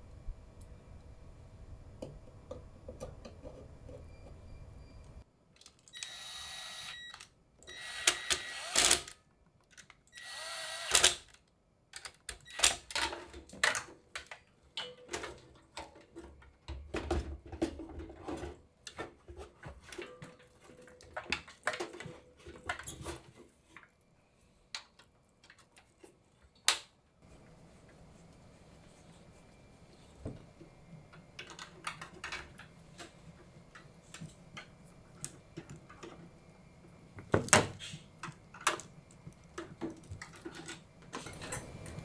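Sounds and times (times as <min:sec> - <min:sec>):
screws and hardware clicking: 0:05.6 - 0:11.4
electric screwdriver whirring: 0:05.9 - 0:09.2, 0:10.2 - 0:11.3.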